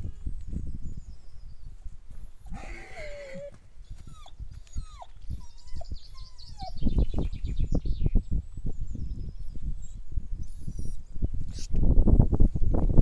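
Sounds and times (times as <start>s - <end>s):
pet animal squealing: 2.5s - 3.5s.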